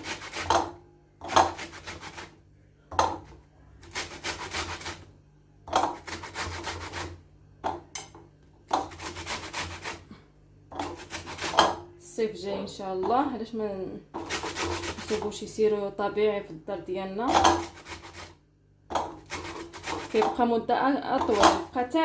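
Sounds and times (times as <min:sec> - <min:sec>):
citrus peel scraping on grater: 0:00.0 - 0:02.3, 0:03.8 - 0:05.1, 0:05.8 - 0:07.2, 0:08.7 - 0:10.1, 0:10.8 - 0:11.7, 0:14.2 - 0:15.2, 0:17.3 - 0:18.4, 0:19.2 - 0:20.4.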